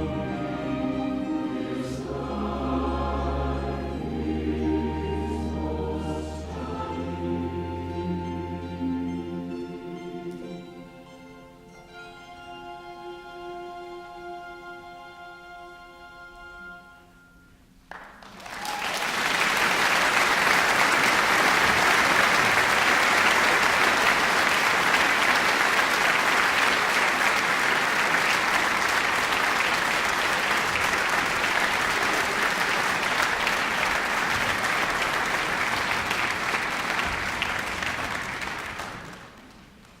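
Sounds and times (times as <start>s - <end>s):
audience applauding: 17.9s - 40.0s.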